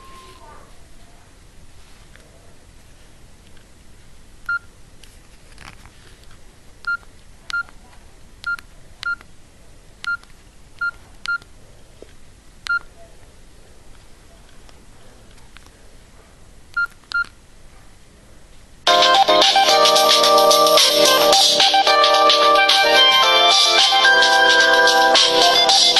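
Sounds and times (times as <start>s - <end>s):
phone keypad beeps: 4.5s - 4.7s, 6.9s - 7.7s, 8.4s - 9.2s, 10.8s - 11.5s, 12.7s - 12.9s, 16.8s - 17.3s.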